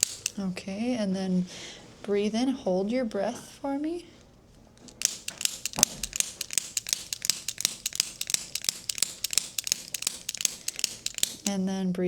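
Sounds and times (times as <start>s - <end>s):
chiropractic instrument clicking: 0.0s - 0.6s, 4.6s - 11.6s.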